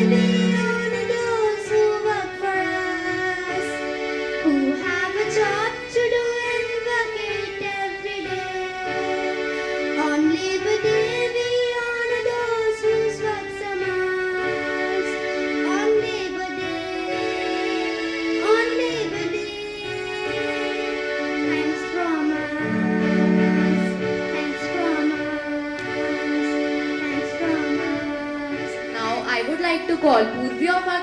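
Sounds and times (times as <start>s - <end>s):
high singing voice: 0.0s - 2.8s
instrumental accompaniment: 0.0s - 31.0s.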